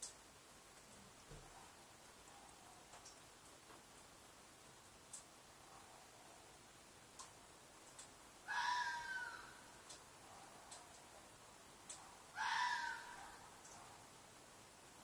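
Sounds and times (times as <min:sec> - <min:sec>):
fox screaming: 0:08.5 - 0:09.6, 0:12.3 - 0:13.4.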